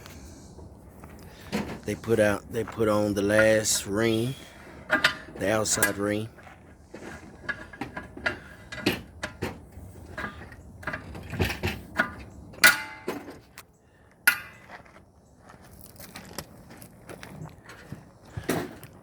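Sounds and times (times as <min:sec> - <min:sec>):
steel clanks and knocks: 0:04.8 - 0:06.2, 0:07.0 - 0:13.6, 0:14.2 - 0:14.8.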